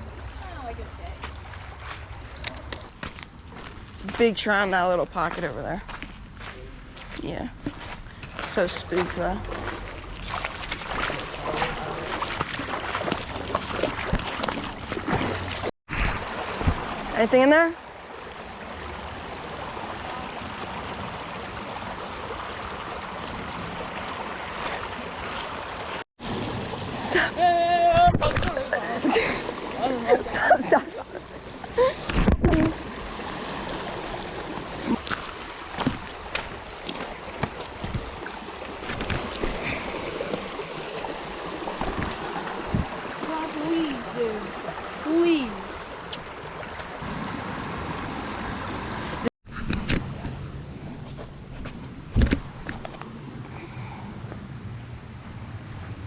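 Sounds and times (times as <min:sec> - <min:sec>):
creek water running and splashing: 0:00.0 - 0:49.3
short splashes and knocks: 0:07.6 - 0:17.2, 0:33.6 - 0:45.1.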